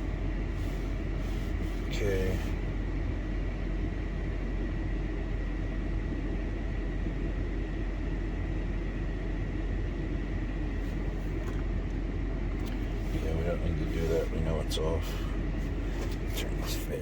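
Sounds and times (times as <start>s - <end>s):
blower fan rushing: 0.0s - 17.0s.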